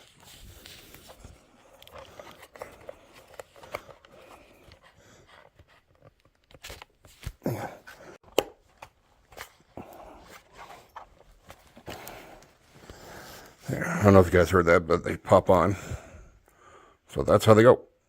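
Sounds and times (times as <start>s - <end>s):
plastic clicks and rubbing: 0.6s - 7.4s.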